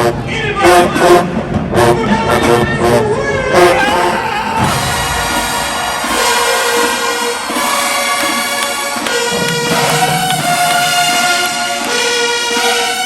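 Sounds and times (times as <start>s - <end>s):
marching band playing chords: 0.0s - 13.0s
lower horns: 2.9s - 13.0s.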